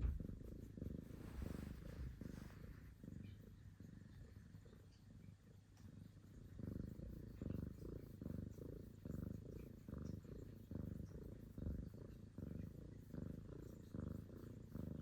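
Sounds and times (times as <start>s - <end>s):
kitten purring: 0.0s - 15.0s.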